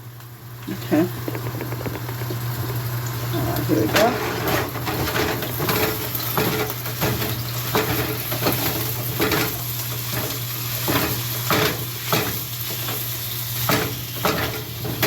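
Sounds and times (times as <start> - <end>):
meat sizzling in a frying pan: 1.2 - 15.0
utensil scraping a pan: 3.7 - 9.5.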